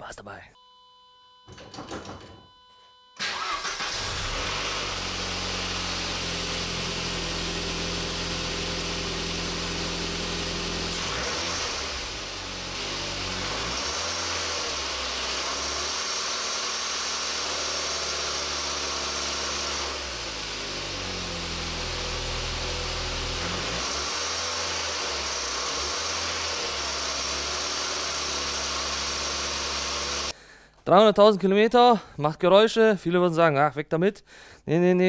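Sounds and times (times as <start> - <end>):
car engine revving: 3.2 - 30.3.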